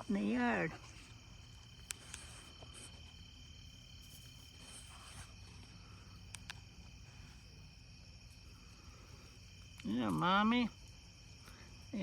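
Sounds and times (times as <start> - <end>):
crickets chirping: 0.0 - 12.0.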